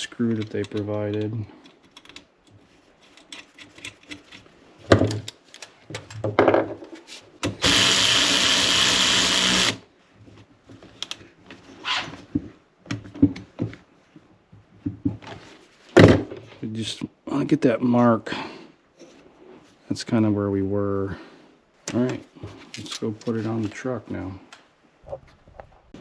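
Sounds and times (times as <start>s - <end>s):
parts clicking and knocking: 0.0s - 9.7s
power drill driving screw: 7.6s - 9.8s.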